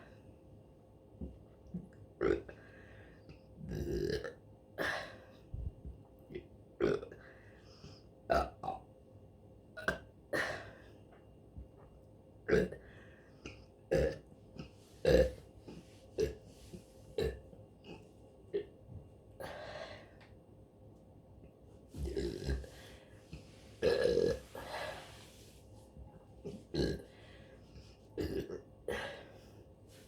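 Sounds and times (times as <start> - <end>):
woman burping: 23.8 - 24.6, 26.7 - 27.1.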